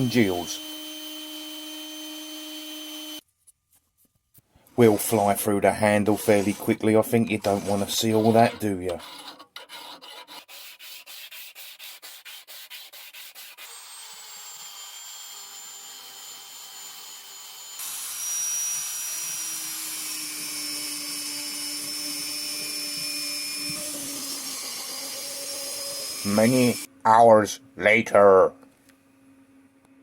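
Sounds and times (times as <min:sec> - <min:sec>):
sandpaper rubbing on metal: 0:05.8 - 0:13.7.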